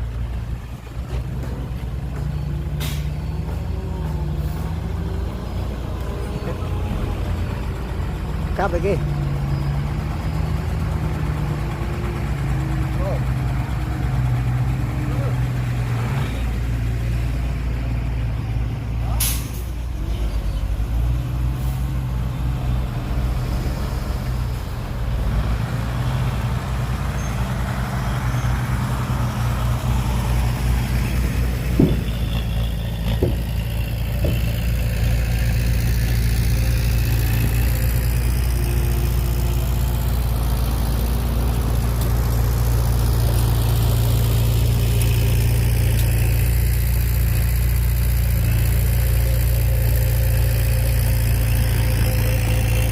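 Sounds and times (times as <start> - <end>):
diesel engine running: 0.0 - 52.9
short knocks: 31.7 - 32.4.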